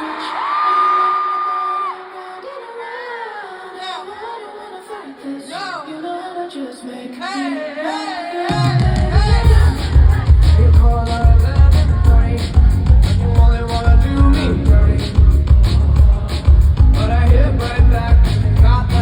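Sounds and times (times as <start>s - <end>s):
person singing: 0.0s - 19.0s
bass and drums: 8.5s - 19.0s.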